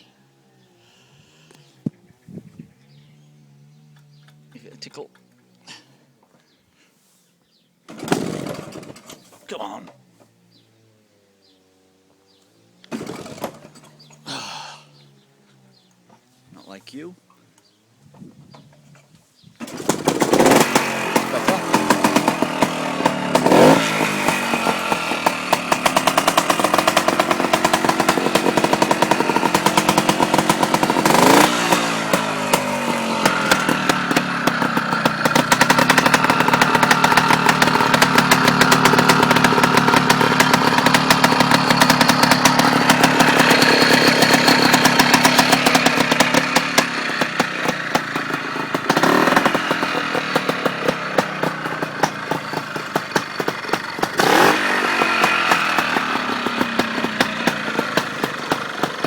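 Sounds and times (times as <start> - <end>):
two-stroke motorcycle engine revving: 7.9 - 9.8, 11.4 - 15.8, 19.6 - 59.0.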